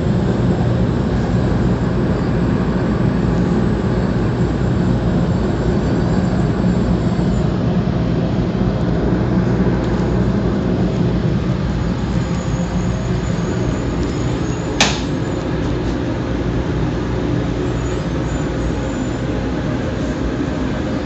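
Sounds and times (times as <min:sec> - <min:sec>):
train running rumble: 0:00.0 - 0:21.0
sharp click: 0:14.8 - 0:15.1.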